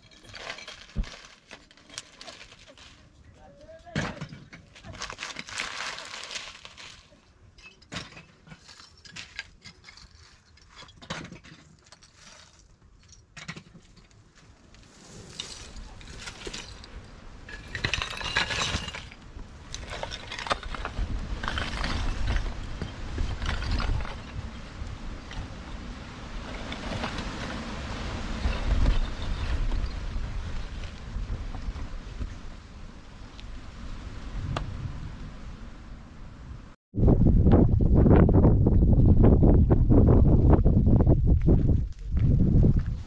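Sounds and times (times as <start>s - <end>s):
small hard objects clinking: 0.0s - 14.2s, 15.3s - 24.6s
wind buffeting microphone: 15.7s - 43.0s.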